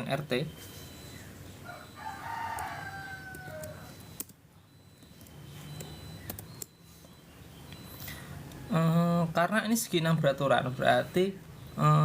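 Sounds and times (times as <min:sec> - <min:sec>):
rooster crowing: 0:01.6 - 0:04.0.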